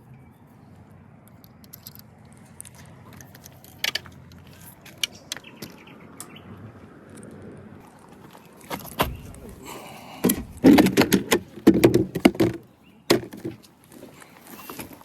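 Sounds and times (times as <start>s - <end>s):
fishing gear knocking and rattling: 1.3s - 5.8s, 8.6s - 13.8s.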